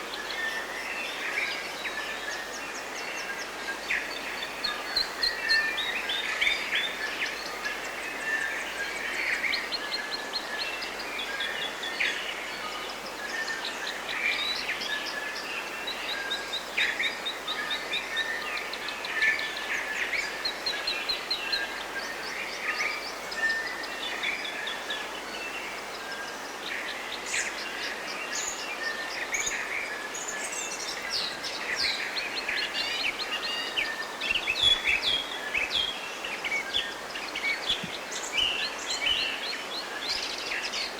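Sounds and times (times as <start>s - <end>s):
forest ambience hiss: 0.0s - 40.9s
songbirds singing: 0.0s - 40.9s.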